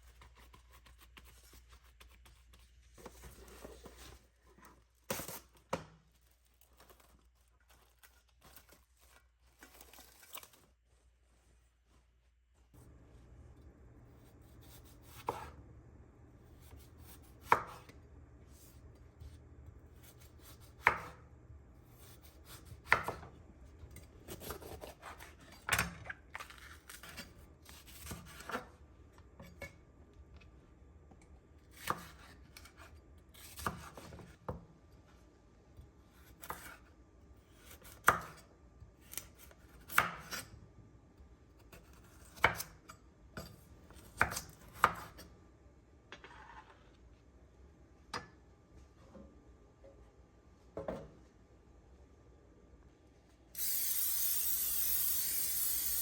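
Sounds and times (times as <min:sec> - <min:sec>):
knife cutting on cutting board: 0:14.5 - 0:15.6, 0:24.3 - 0:25.6, 0:44.1 - 0:45.2.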